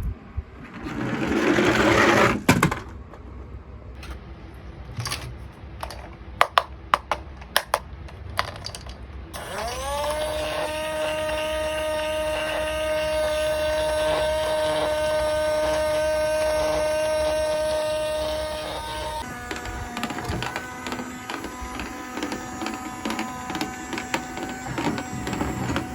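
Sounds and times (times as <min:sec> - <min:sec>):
plastic clicks and taps: 0:05.8 - 0:09.0
toy motor whine: 0:09.3 - 0:25.9.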